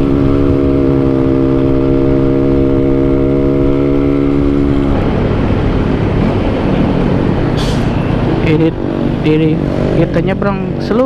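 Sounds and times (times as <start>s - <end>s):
two-stroke motorcycle engine running: 0.0s - 7.3s.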